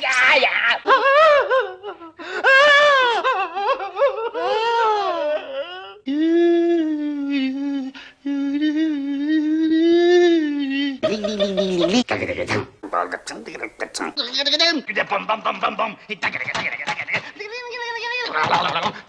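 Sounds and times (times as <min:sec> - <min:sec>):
man making comic vocal noises: 0:09.3 - 0:14.2.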